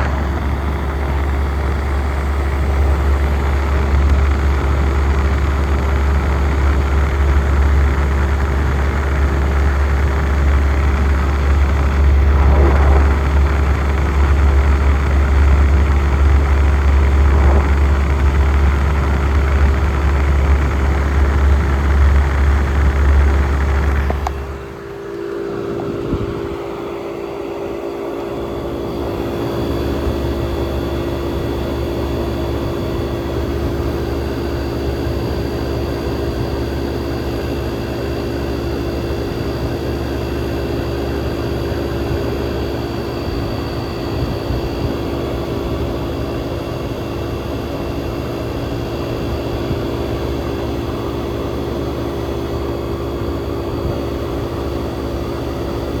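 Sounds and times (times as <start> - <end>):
fans rushing: 0.0 - 26.8
air conditioner compressor hum: 0.0 - 56.0.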